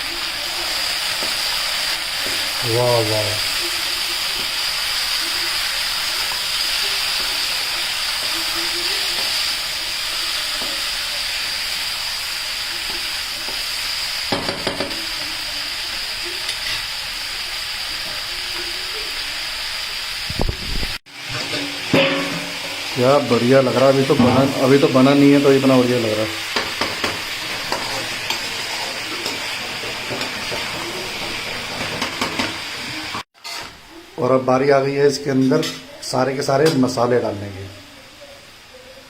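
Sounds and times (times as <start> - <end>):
chicken sizzling in hot oil: 0.0 - 39.0
pan clattering while stirred: 12.8 - 15.1, 21.3 - 23.0, 26.4 - 33.8.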